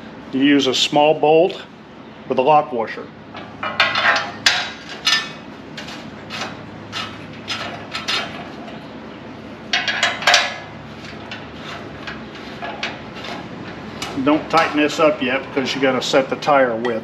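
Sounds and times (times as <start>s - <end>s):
metal parts clanking together: 3.4s - 8.8s, 9.7s - 11.4s.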